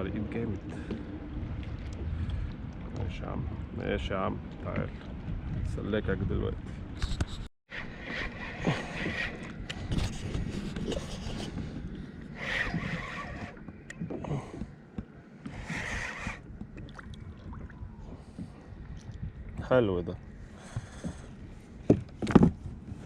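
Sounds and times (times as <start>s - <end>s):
water sounds: 0.0s - 7.0s, 7.7s - 23.0s
scraping and knocking on kayak: 8.0s - 11.9s, 20.6s - 23.0s.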